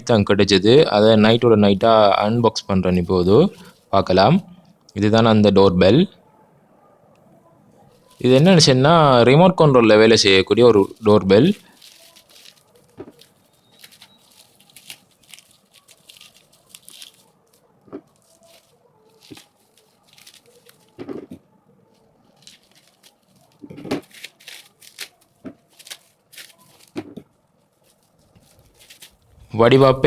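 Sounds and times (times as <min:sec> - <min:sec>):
packaging crinkling and tearing: 0:09.9 - 0:29.5.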